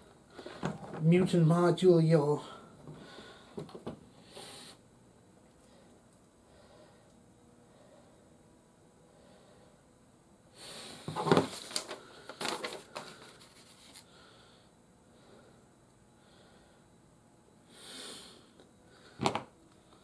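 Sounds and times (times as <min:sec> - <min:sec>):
plastic toy parts rustling: 0:11.1 - 0:14.0.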